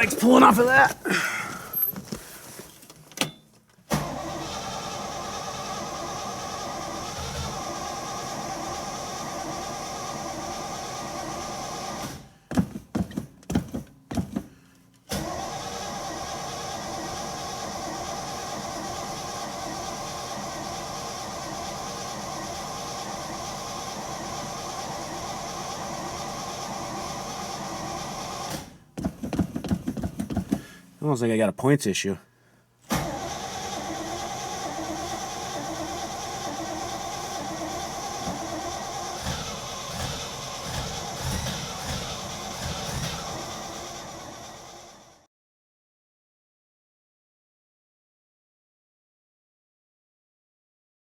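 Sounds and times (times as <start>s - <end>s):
car engine cranking by starter: 0.0s - 12.4s, 13.0s - 30.9s, 32.8s - 45.2s
steady mechanical whir: 32.9s - 45.2s.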